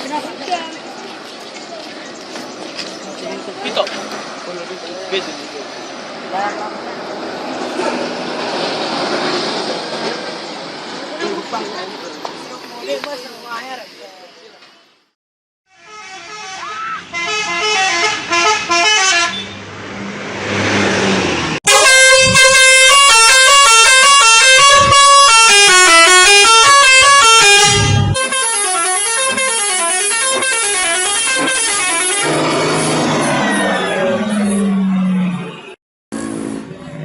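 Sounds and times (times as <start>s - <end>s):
multi-tone bus horns playing tunes: 15.7s - 19.7s, 21.6s - 36.7s
rushing noise: 19.7s - 28.2s.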